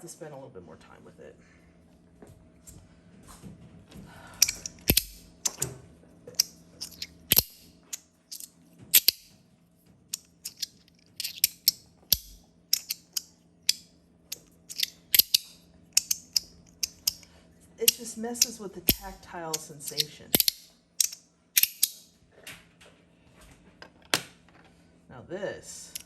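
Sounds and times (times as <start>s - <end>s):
metal fidget slider clicking: 4.4s - 5.6s, 6.3s - 7.6s, 8.3s - 9.2s, 10.2s - 22.0s.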